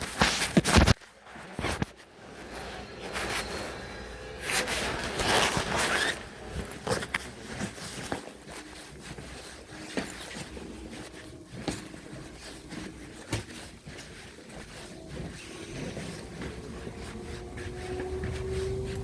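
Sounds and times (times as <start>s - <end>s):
steady rumble of noise: 1.7s - 8.4s, 15.3s - 19.0s.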